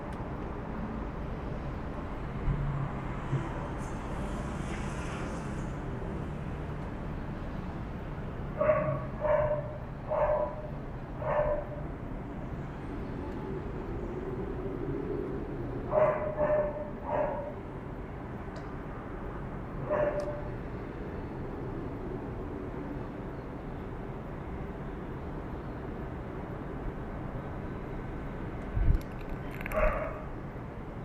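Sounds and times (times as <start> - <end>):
steady background noise: 0.0 - 31.0
dog barking: 8.6 - 11.8, 15.9 - 17.6, 19.8 - 20.5, 29.8 - 30.3.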